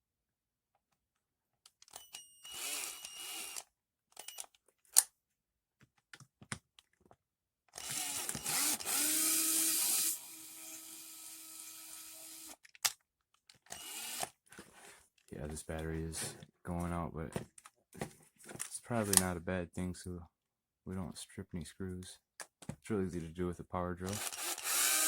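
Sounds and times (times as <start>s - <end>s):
cordless drill whirring: 2.2s - 4.4s, 7.8s - 12.6s, 13.7s - 14.4s, 24.1s - 25.0s.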